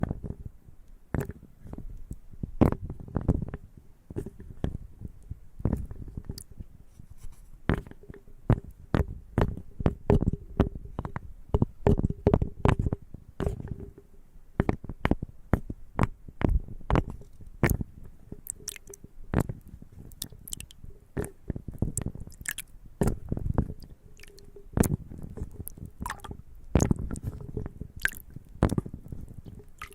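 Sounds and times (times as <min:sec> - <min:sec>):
chewing and crunching nuts: 0:16.4 - 0:29.9.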